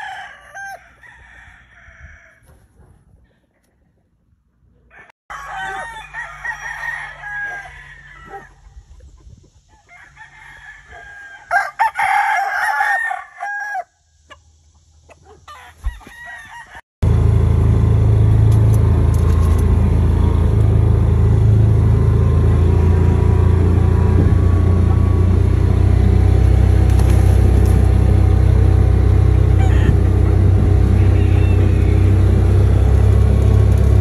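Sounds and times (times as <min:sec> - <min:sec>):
roosters crowing: 0:00.0 - 0:02.7, 0:04.8 - 0:17.9, 0:18.8 - 0:34.0
loud steady low rumble: 0:17.0 - 0:34.0.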